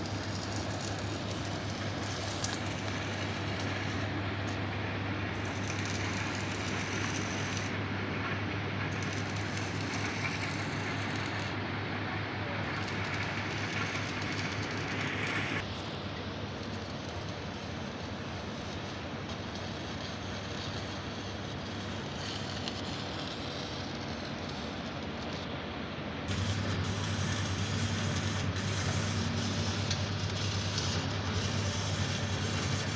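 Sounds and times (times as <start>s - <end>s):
heavy machinery humming: 26.2s - 32.9s.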